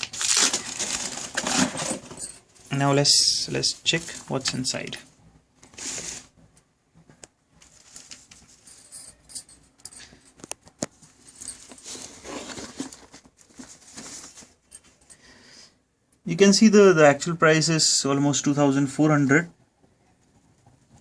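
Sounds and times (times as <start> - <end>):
cardboard box rustling and scraping: 0.6 - 2.2, 11.6 - 14.6.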